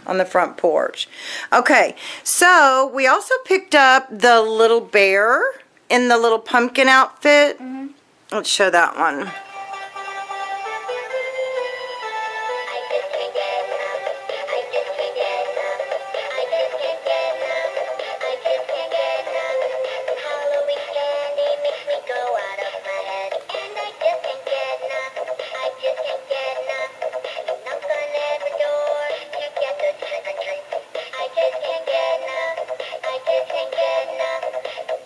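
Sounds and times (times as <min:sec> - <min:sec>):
synthetic singing over tinny music: 0:12.7 - 0:35.0.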